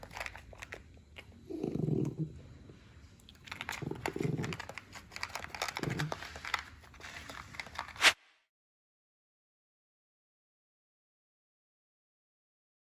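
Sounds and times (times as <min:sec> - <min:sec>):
dog crunching and chewing food: 0:00.0 - 0:08.0
dog growling: 0:01.2 - 0:06.2.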